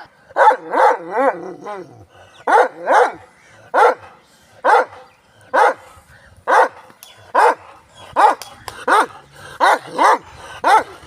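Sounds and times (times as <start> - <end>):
dog barking: 0.3 - 1.4, 2.5 - 5.8, 6.5 - 6.8, 7.4 - 11.0
dog whining bark: 0.4 - 1.9, 2.5 - 3.2.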